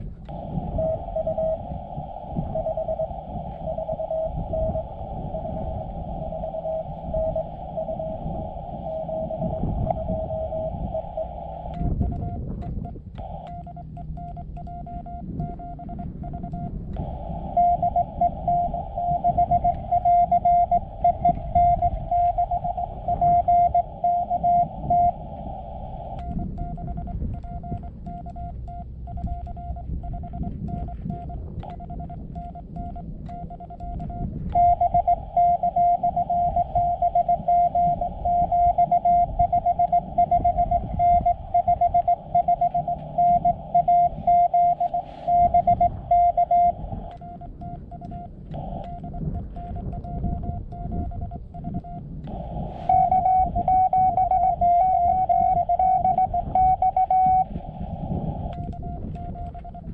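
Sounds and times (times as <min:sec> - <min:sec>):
receiver hiss: 0:00.0 - 0:59.9
morse code keyed tones: 0:00.2 - 0:59.9.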